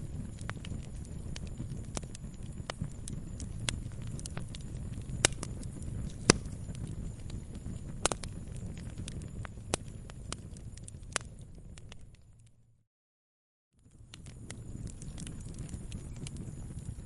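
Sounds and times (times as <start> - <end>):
campfire crackling and popping: 0.0 - 12.6, 13.8 - 17.0.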